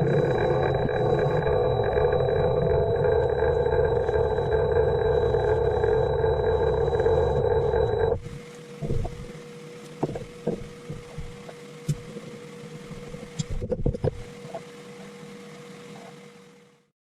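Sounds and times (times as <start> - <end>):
metal lathe motor humming: 0.0 - 8.2.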